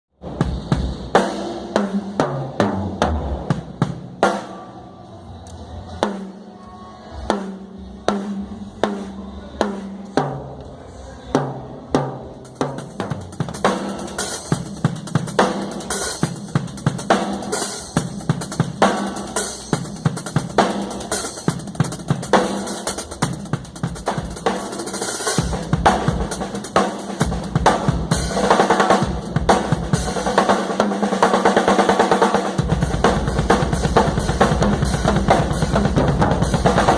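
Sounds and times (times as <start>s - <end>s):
cymbals: 12.4s - 36.9s.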